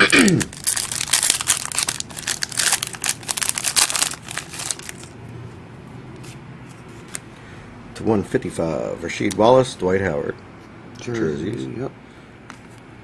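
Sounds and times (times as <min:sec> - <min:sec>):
foil wrapper crinkling: 0:00.3 - 0:05.2.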